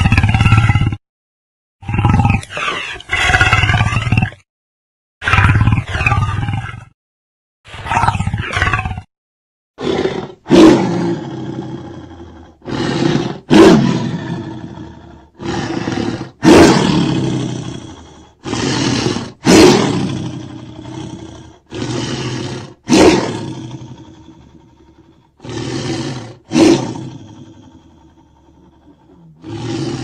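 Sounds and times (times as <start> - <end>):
monster roar: 9.8 - 30.0.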